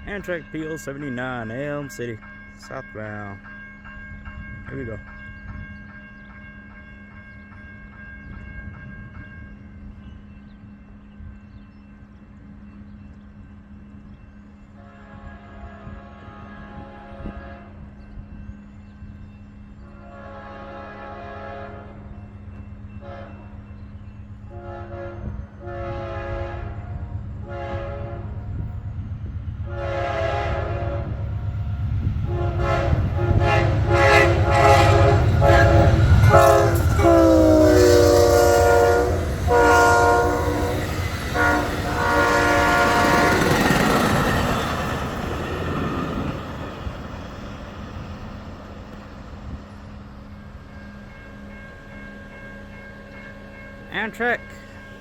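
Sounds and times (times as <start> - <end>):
train horn blasts: 14.8 - 17.9, 19.9 - 22.1, 23.0 - 23.5, 24.5 - 28.4, 29.6 - 31.3, 32.2 - 43.7
diesel locomotive rumble: 24.6 - 50.7.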